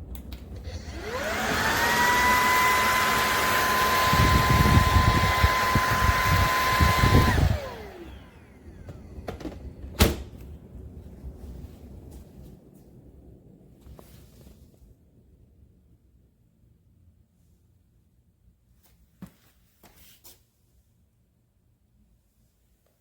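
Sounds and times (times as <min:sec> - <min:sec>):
vacuum cleaner motor whining: 0:00.5 - 0:09.6.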